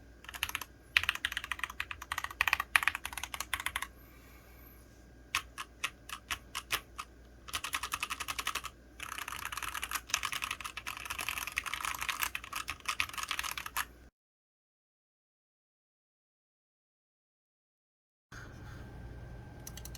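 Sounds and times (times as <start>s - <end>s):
mechanical keyboard typing: 0.2s - 3.9s, 5.3s - 13.9s, 19.6s - 19.9s.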